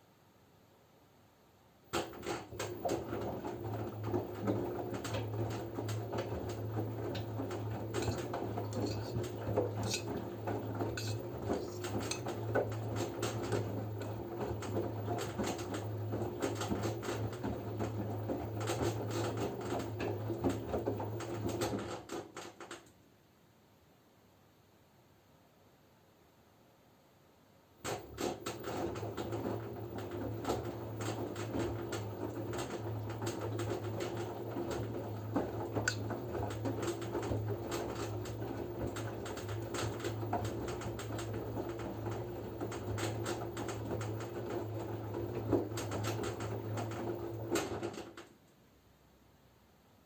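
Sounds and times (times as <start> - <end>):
washing machine motor hum: 1.8 - 22.8, 27.8 - 48.3
clothes clattering in drum: 1.9 - 22.8, 27.8 - 48.2
water sloshing: 4.2 - 18.0.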